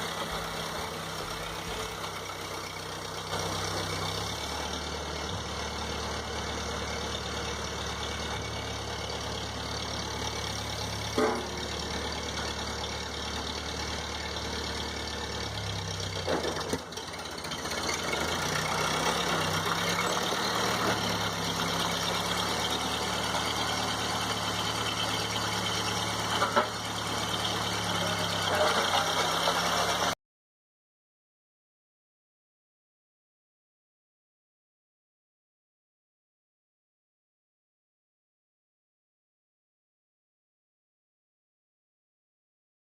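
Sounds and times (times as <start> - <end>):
tractor engine running: 0.0 - 30.2.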